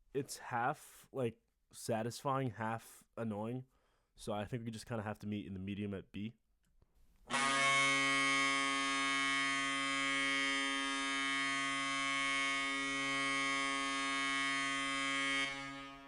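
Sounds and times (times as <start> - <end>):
goal horn deep blast: 7.3 - 16.0.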